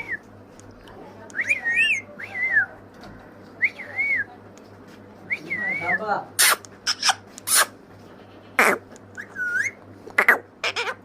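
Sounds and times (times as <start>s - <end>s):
parrot whistling: 1.4s - 2.7s, 9.2s - 9.8s.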